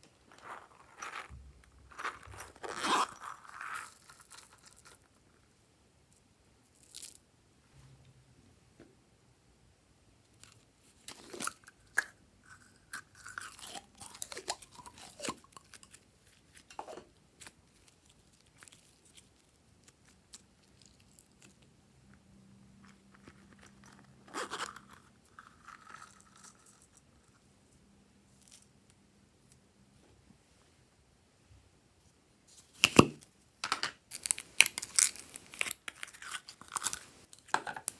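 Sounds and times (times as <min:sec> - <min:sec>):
slime crackling and popping: 0:34.1 - 0:37.5.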